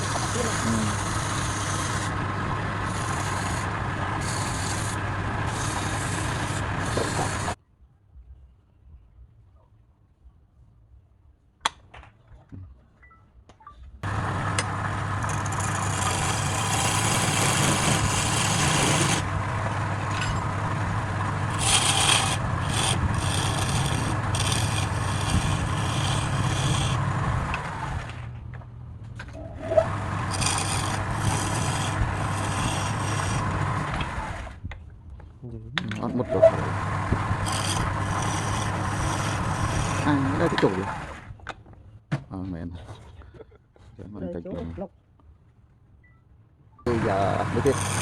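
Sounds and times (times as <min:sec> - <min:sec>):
lathe motor humming: 0:00.0 - 0:07.6, 0:14.0 - 0:28.0, 0:29.7 - 0:34.3, 0:36.2 - 0:41.1, 0:46.9 - 0:48.0
tool scraping spinning wood: 0:00.0 - 0:07.6, 0:14.0 - 0:28.6, 0:29.2 - 0:34.6, 0:36.0 - 0:41.2, 0:46.9 - 0:48.0.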